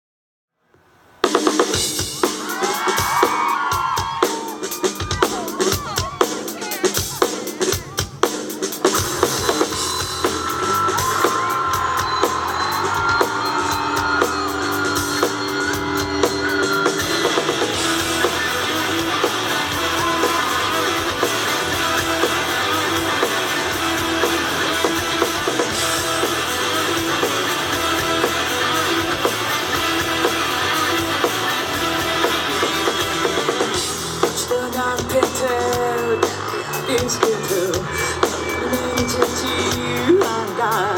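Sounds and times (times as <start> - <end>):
drum kit: 1.2 - 40.9
electric guitar: 8.8 - 40.9.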